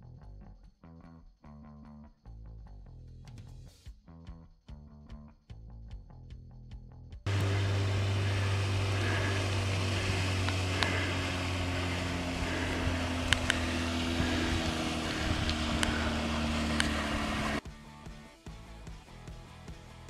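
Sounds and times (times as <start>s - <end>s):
engine droning: 7.3s - 17.6s.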